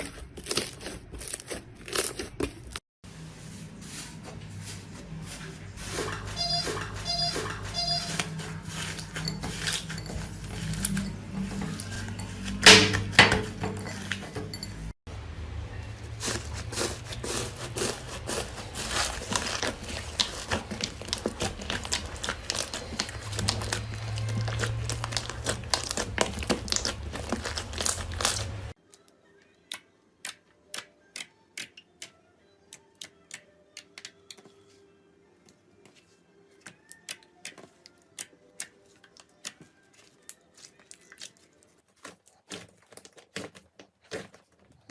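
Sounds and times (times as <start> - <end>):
slime crackling and popping: 16.2 - 28.8.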